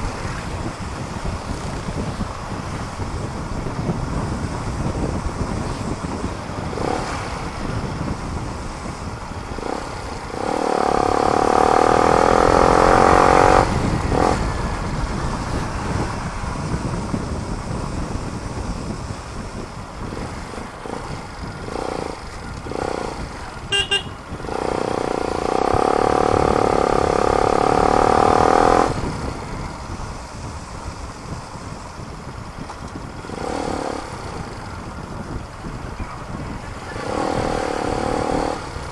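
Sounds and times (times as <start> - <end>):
motorcycle engine riding: 0.0 - 38.9
wind noise: 0.0 - 38.9
loud held pitched tone: 23.7 - 24.6.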